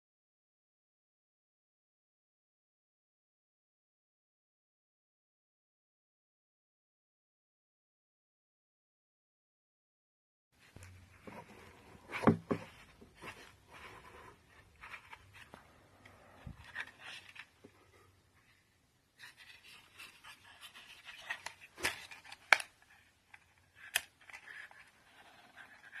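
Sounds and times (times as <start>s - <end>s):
rustling and scraping: 10.6s - 26.0s.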